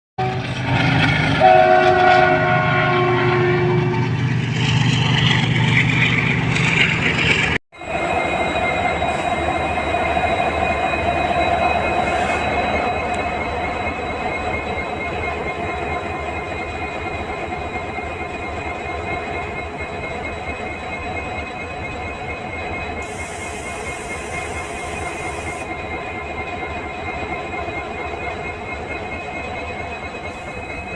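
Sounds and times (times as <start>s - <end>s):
locomotive horn: 0.2s - 0.8s, 1.4s - 4.2s
diesel locomotive engine running: 0.2s - 30.9s.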